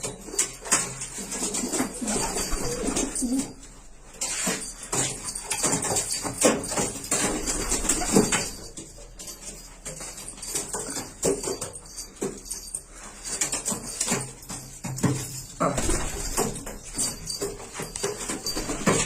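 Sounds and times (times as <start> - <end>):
pigeons scuffling: 0.0 - 19.0.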